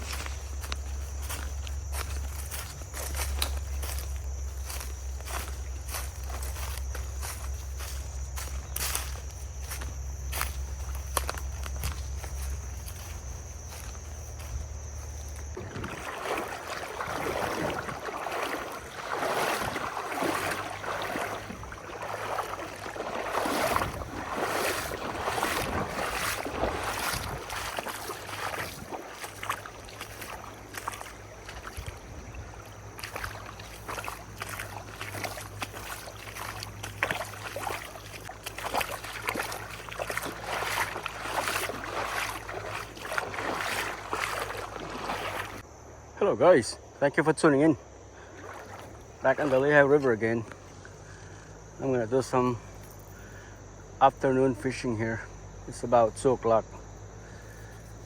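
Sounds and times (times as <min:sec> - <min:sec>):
water sloshing and splashing: 0:00.0 - 0:45.7, 0:47.7 - 0:53.4
wind buffeting microphone: 0:15.5 - 0:33.6.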